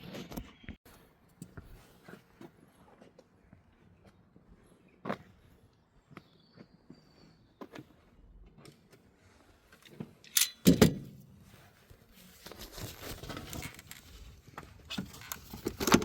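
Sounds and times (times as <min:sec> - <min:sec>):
tools clicking and clinking: 0:09.8 - 0:11.1
scraping and rustling: 0:11.4 - 0:16.0.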